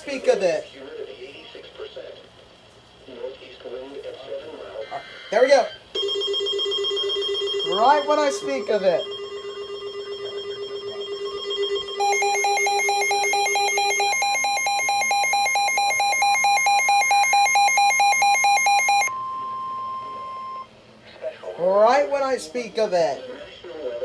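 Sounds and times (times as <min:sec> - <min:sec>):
fast electronic beeping alarm: 0:06.0 - 0:20.7
higher steady alarm tone: 0:06.0 - 0:20.8
low steady tone: 0:12.0 - 0:20.7.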